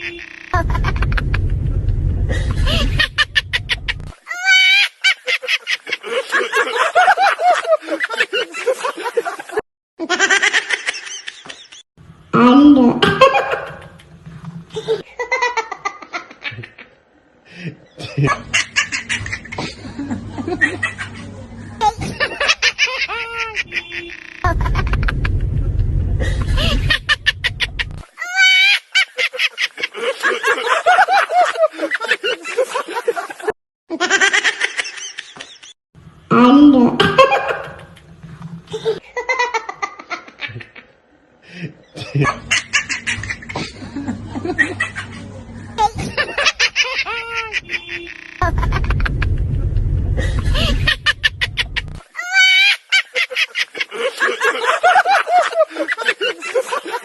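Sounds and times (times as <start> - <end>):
background hum: 0.4 - 4.2, 17.5 - 28.1, 41.4 - 52.2
low background rumble: 0.6 - 4.2, 18.3 - 28.1, 42.4 - 52.0
man cackling laugh: 12.8 - 14.0, 36.7 - 38.0, 45.8 - 49.2, 50.2 - 57.0
high-pitched giggling laughter: 18.2 - 25.0, 26.6 - 35.7, 42.0 - 49.2, 50.3 - 57.0.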